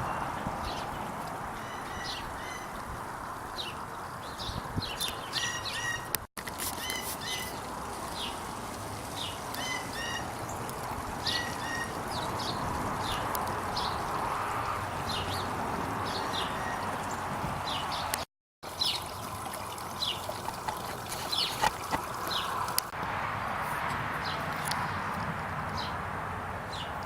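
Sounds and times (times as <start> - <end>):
small birds chirping: 3.5 - 8.4, 20.0 - 22.9.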